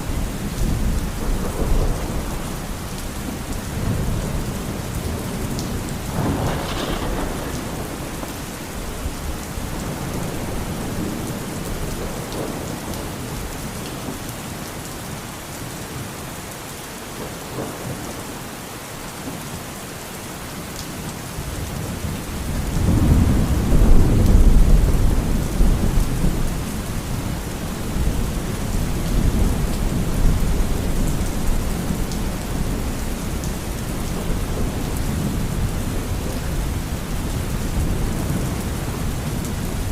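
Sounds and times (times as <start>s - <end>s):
steady rain: 0.0s - 39.9s
rolling thunder: 0.6s - 13.1s, 22.7s - 39.9s.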